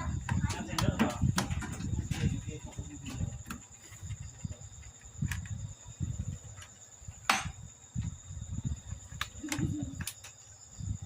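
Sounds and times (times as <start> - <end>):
knocks on a workbench: 0.2 - 2.2, 7.3 - 7.6.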